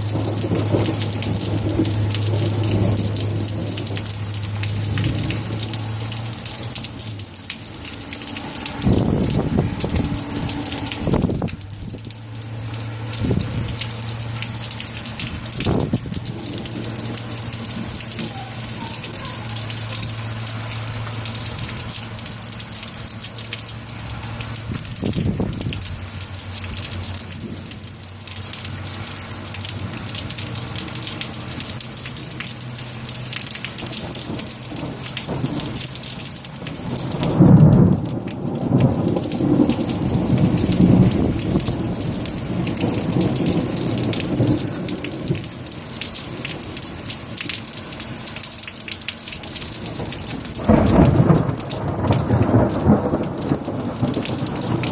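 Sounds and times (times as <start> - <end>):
thunder rumbling: 0.0 - 7.2, 8.0 - 20.4, 33.8 - 47.1, 49.8 - 54.9
steady rain: 0.0 - 54.9
loud thunder clap: 50.6 - 54.9.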